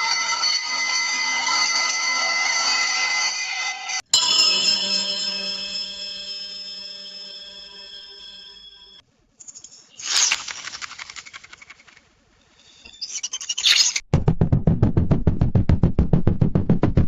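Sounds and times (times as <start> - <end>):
deep rattling pulse: 14.1 - 17.0.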